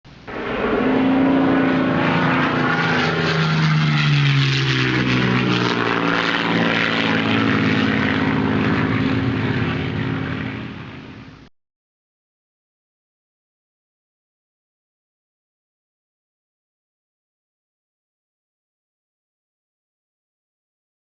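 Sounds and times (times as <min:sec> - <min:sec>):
propeller aircraft engine running: 0:00.1 - 0:11.5.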